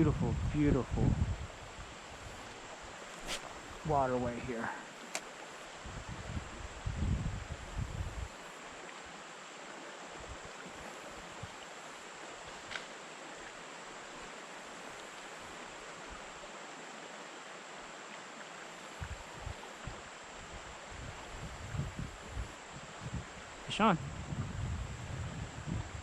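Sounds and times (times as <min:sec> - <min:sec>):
river current rushing: 0:01.7 - 0:05.8.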